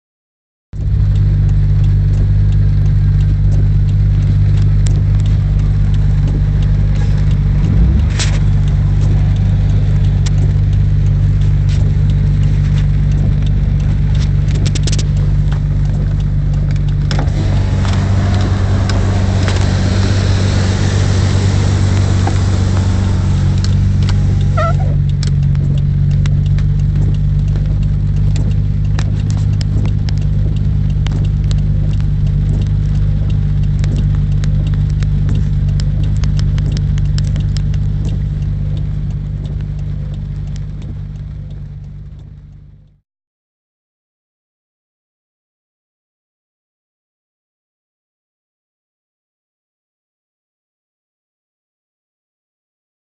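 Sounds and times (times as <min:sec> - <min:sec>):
car driving through floodwater: 0:00.8 - 0:42.7
car engine idling: 0:00.8 - 0:43.0.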